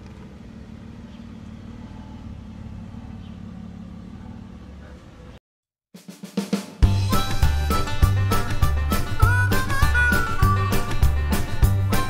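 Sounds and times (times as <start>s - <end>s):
car engine and road rumble: 0.0s - 5.4s.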